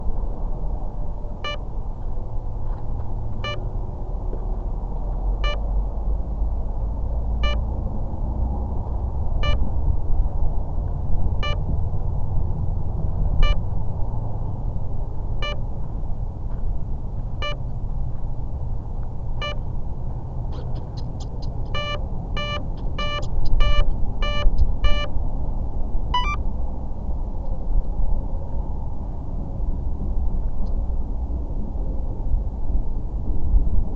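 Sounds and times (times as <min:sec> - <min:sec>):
wind rumble on microphone: 0:00.0 - 0:33.9
short electronic beeps: 0:03.4 - 0:03.6, 0:17.4 - 0:17.6, 0:19.4 - 0:19.6, 0:20.5 - 0:25.1, 0:26.2 - 0:26.4.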